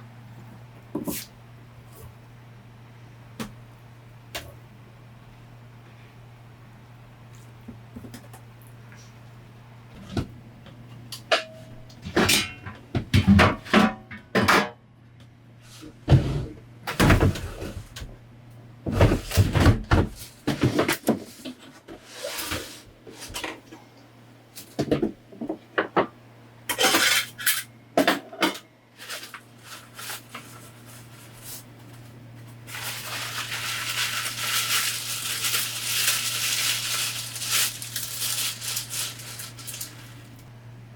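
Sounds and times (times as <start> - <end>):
low steady hum: 23.0 - 40.9.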